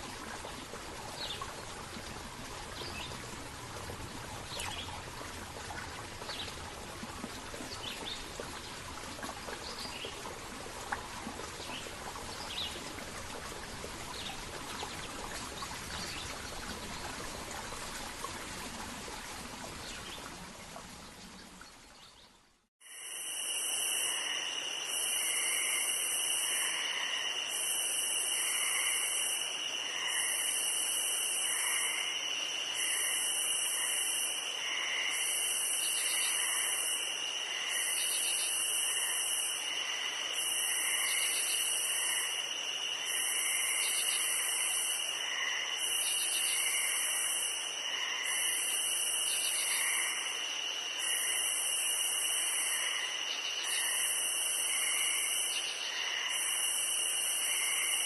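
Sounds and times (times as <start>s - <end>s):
insect trill: 22.8s - 58.0s.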